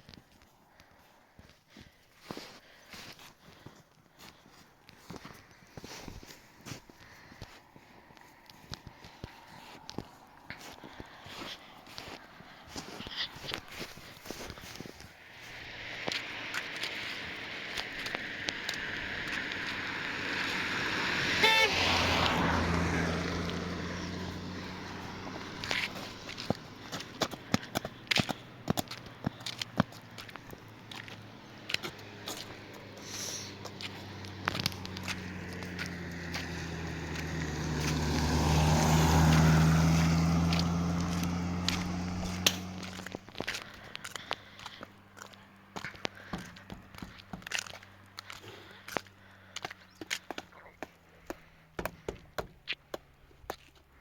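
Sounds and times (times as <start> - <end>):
vehicle passing: 7.0 - 52.1
horn toot: 21.2 - 22.6.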